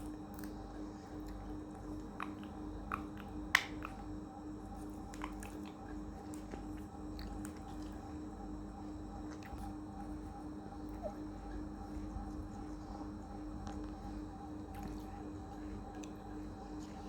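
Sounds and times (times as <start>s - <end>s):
parrot beak cracking food: 2.2s - 4.0s.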